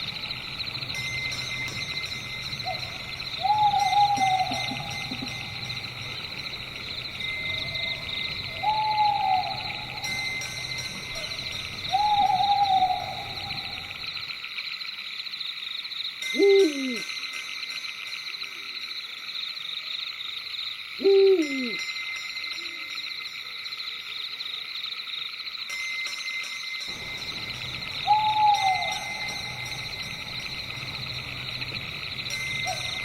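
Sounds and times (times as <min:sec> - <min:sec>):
high-pitched chirring night chorus: 0:00.0 - 0:33.0
owl hooting: 0:02.5 - 0:06.1, 0:07.4 - 0:10.3, 0:11.1 - 0:14.1, 0:16.4 - 0:17.0, 0:21.0 - 0:21.8, 0:27.5 - 0:33.0.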